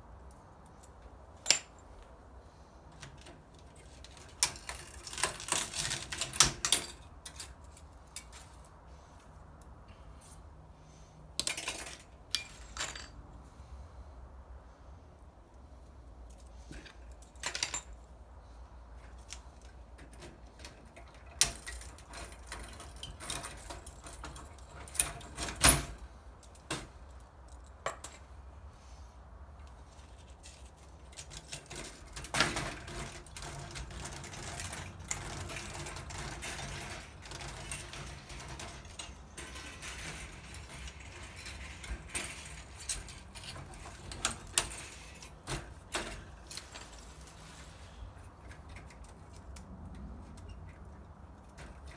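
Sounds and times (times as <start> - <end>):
metal parts clinking: 4.0 - 8.7, 11.4 - 13.1, 31.4 - 48.1
rattling metal parts: 30.5 - 49.1.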